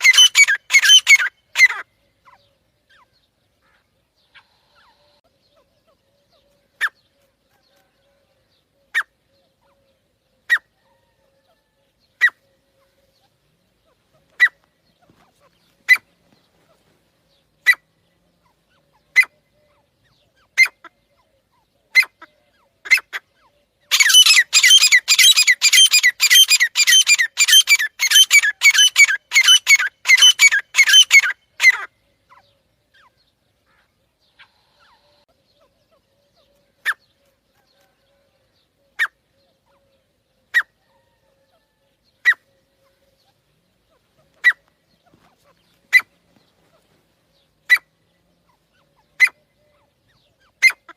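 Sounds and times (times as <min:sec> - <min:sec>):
francolins calling: 0:00.0 - 0:50.9.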